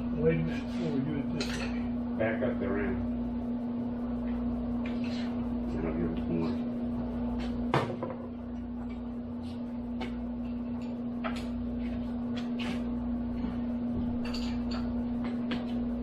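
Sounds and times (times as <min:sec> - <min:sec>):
machine hum with low rumble: 0:00.0 - 0:16.0
metal clinks and knocks: 0:14.2 - 0:14.9.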